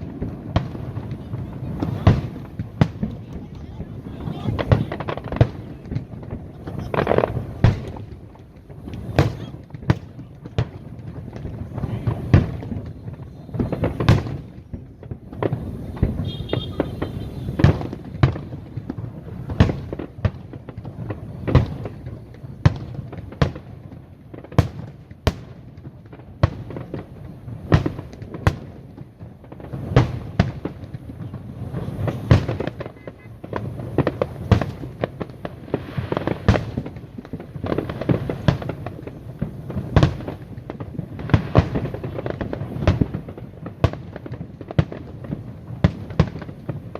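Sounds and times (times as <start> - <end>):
firework shells bursting: 0.0 - 23.7
rumble of distant fireworks: 0.0 - 46.9.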